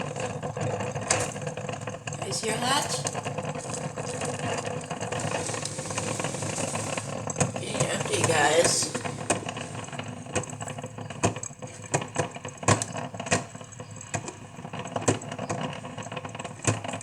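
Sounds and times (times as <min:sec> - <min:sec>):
coffee maker sputtering: 0:00.0 - 0:17.0
faint steady hum: 0:02.0 - 0:12.2.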